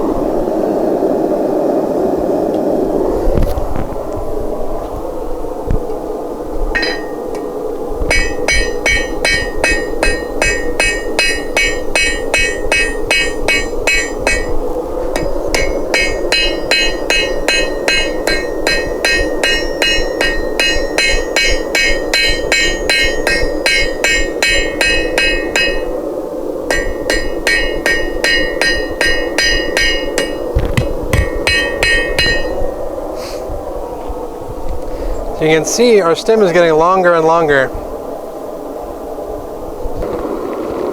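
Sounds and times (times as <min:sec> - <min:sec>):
steady background drone: 0:00.0 - 0:40.9
hammer striking steel on anvil: 0:06.8 - 0:26.0, 0:26.7 - 0:32.8.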